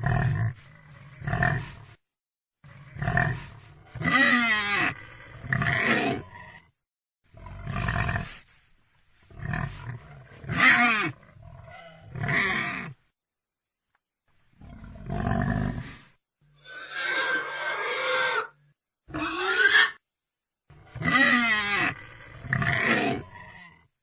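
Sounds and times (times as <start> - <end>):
pig calling: 10.4 - 12.9, 16.6 - 20.0, 20.9 - 23.6.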